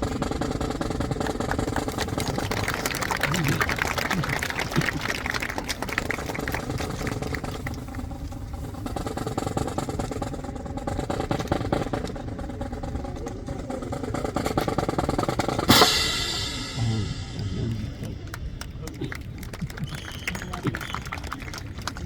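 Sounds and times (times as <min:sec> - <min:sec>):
snare drum roll: 0:13.6 - 0:18.5
cymbal crash: 0:15.7 - 0:18.6.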